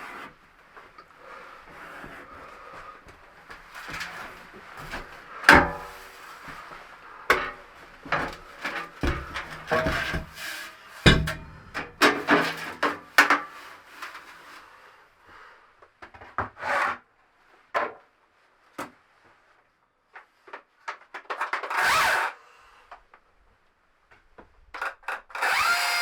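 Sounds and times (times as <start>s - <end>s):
wood knocks and scrapes: 3.6s - 10.4s.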